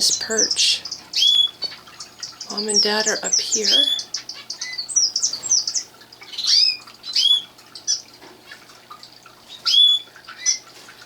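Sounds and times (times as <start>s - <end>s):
canaries chirping: 0.0s - 8.8s, 9.4s - 10.8s.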